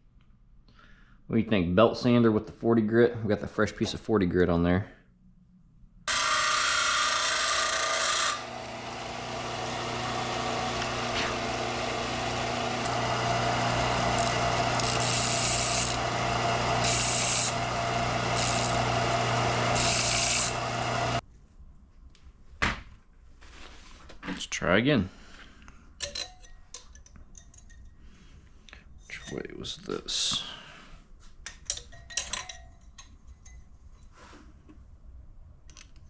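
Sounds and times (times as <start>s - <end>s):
belt sander running: 6.1s - 21.2s
metal grinding on sander belt: 6.1s - 21.2s.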